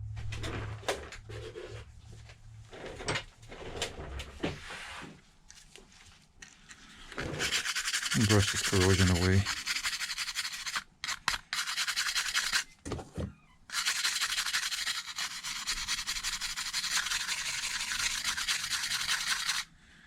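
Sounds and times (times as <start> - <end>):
brush scrubbing circuit board: 7.2 - 12.6, 13.7 - 19.7.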